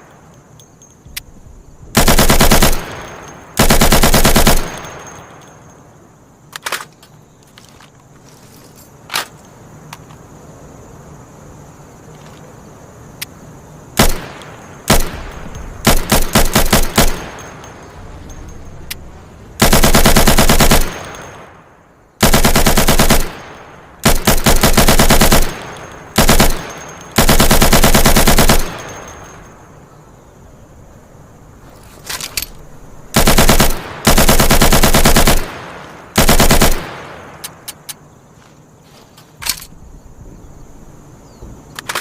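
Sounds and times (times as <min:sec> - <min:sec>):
machine gun firing bursts: 0:02.0 - 0:05.1, 0:14.0 - 0:17.5, 0:19.6 - 0:21.4, 0:22.2 - 0:29.1, 0:33.1 - 0:37.2.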